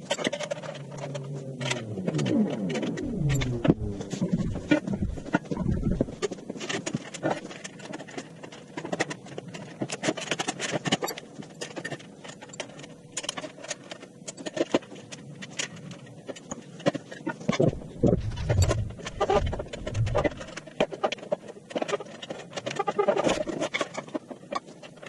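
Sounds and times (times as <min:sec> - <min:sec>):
sped-up clatter of tools: 0:00.0 - 0:25.0.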